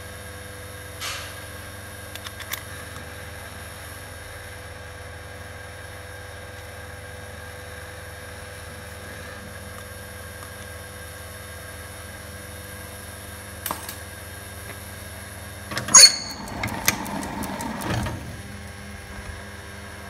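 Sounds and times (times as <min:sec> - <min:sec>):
machine tool motor humming: 0:15.7 - 0:19.6.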